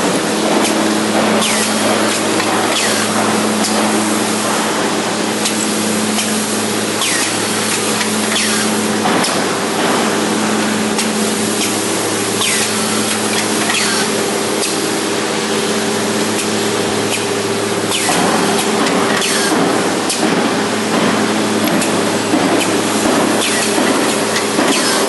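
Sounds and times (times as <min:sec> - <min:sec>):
drilling machine motor hum: 0:00.0 - 0:25.0.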